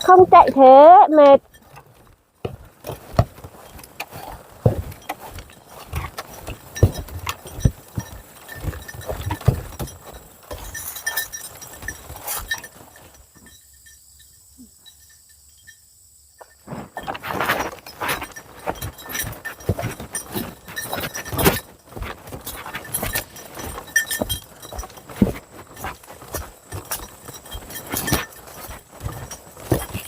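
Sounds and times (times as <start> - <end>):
footsteps crunching on forest path: 0.0 - 13.9, 16.4 - 30.0.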